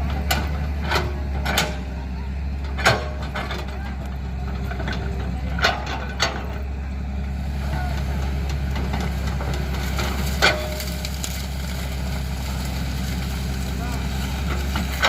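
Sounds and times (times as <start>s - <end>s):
diesel engine running: 0.0s - 15.0s.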